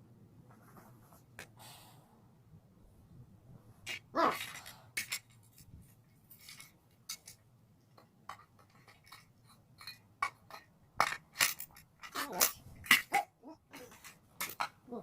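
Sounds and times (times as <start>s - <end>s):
hard objects clinking and knocking: 3.9s - 15.0s.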